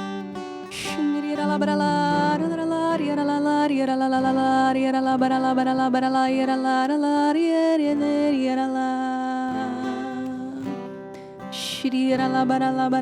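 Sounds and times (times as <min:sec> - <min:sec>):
person singing chant-like melody: 0:00.7 - 0:04.5.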